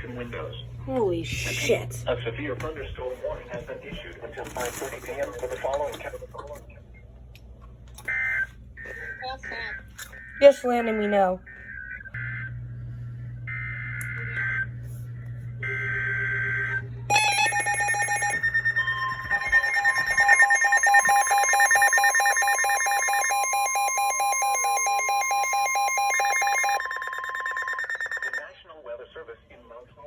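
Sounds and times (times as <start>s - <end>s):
steady alarm tone: 8.1s - 28.4s
fast-pulsing alert tones: 15.7s - 28.4s.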